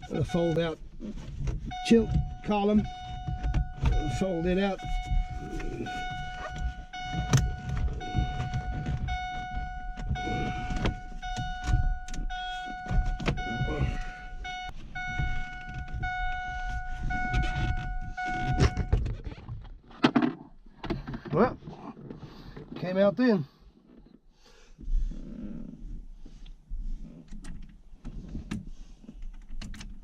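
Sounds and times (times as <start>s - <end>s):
car warning chime beeping: 0.0s - 0.8s, 1.4s - 19.0s
clunks and knocks on steering column: 1.3s - 4.2s.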